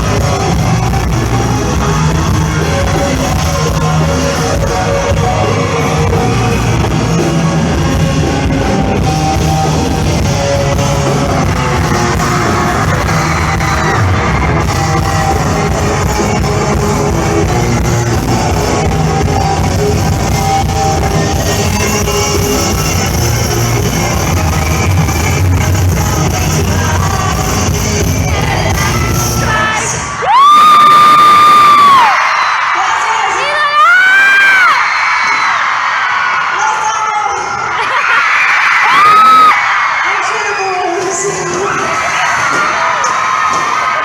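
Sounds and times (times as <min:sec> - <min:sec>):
lead singer singing: 0:00.0 - 0:30.5
live pop-rock band: 0:00.0 - 0:32.7.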